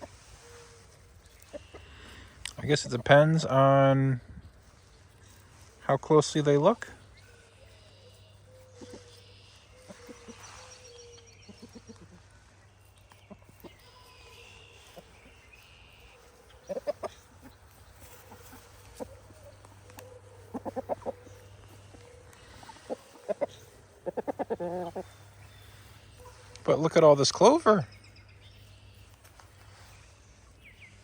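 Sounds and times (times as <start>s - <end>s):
chickens clucking: 0.0s - 31.0s.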